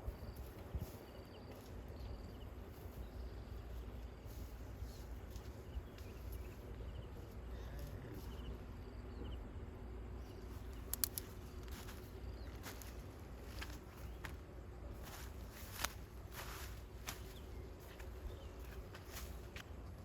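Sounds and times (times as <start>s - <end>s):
faint chirping: 0.0s - 15.8s
low steady rumble: 0.0s - 20.0s.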